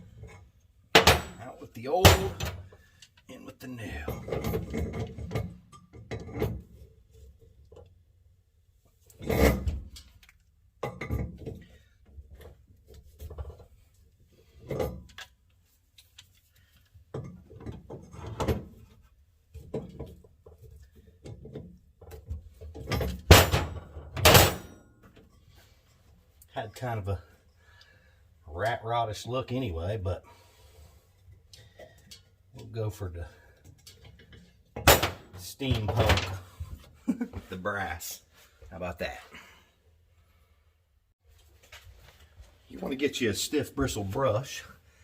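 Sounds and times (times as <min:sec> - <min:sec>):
metal parts and tools clunking: 0:00.0 - 0:03.2, 0:03.8 - 0:07.9, 0:09.1 - 0:15.4, 0:16.0 - 0:26.4, 0:33.3 - 0:37.5.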